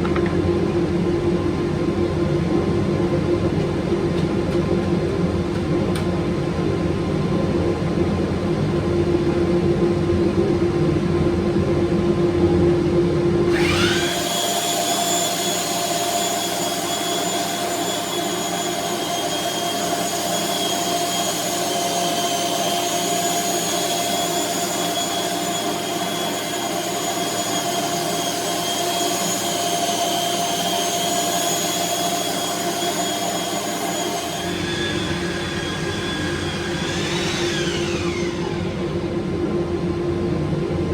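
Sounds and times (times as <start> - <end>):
power tool motor whine: 13.5 - 39.4.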